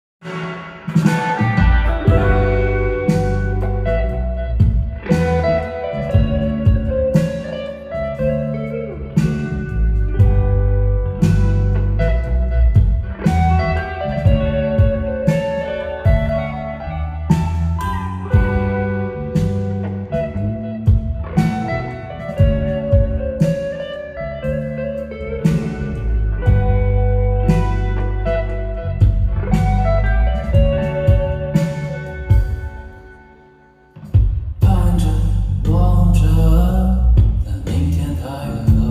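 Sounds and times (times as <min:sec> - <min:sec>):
guitar: 0:00.2 - 0:38.9
live band playing: 0:00.2 - 0:38.9
deep bass line: 0:01.1 - 0:32.8, 0:34.5 - 0:38.9.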